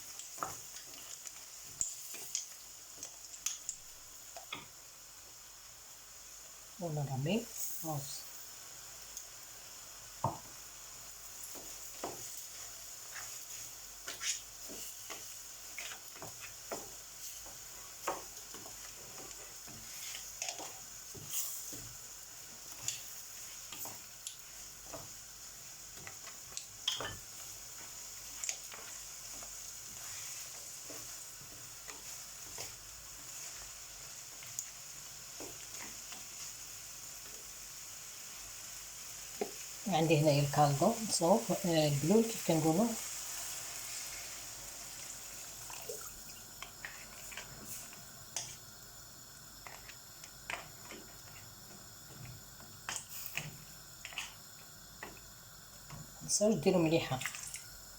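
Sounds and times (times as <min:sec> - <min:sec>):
rice sizzling in hot oil: 0:00.0 - 0:57.9
spoon scraping and knocking pan: 0:13.2 - 0:22.0, 0:26.0 - 0:31.2, 0:49.6 - 0:54.4.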